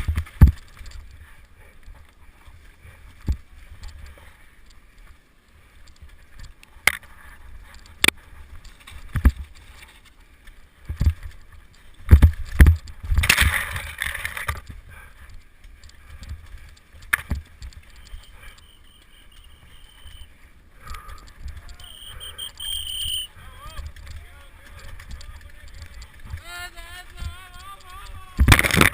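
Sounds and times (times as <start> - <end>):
bike knocks and rattles: 0.0 - 1.0.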